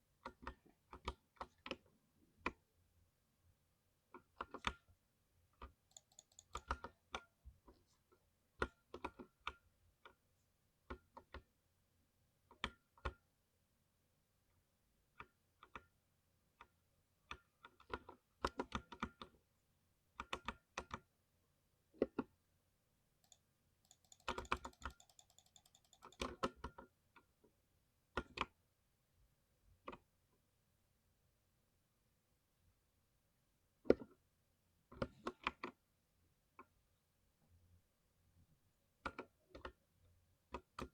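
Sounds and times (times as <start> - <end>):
mechanical keyboard key clicks: 5.9 - 6.9, 23.2 - 26.5.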